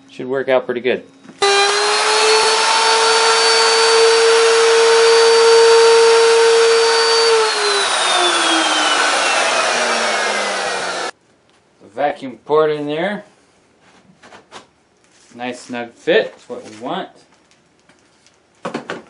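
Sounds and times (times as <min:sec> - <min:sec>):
wood router whining: 0:01.4 - 0:11.2.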